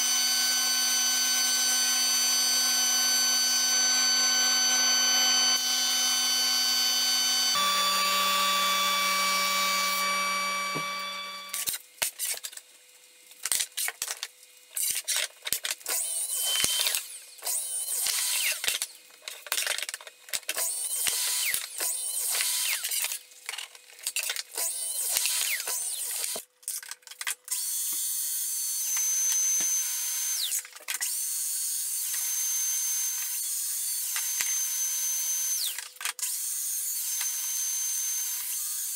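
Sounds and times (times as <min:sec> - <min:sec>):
electric tool motor whining: 0:00.0 - 0:11.8, 0:15.9 - 0:18.9.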